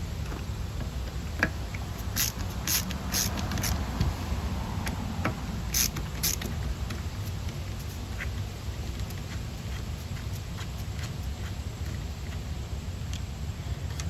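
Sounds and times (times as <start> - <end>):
steady low hum: 0.0 - 14.0
small tools clicking and scraping: 1.4 - 3.8, 5.7 - 6.6.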